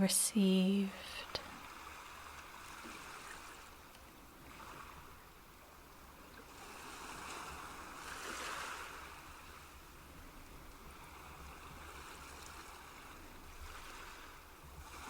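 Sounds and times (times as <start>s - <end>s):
soft water wash: 0.0s - 15.0s.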